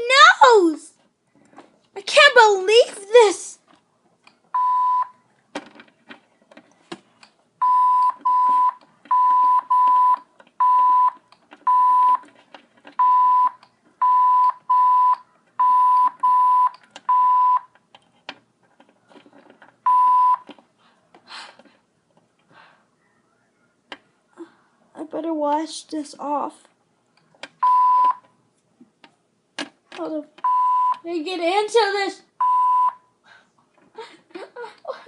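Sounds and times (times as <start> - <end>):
censor beeps: 4.6 - 5.1, 7.6 - 12.2, 13.0 - 17.7, 27.6 - 28.2, 30.4 - 31.0, 32.4 - 33.0.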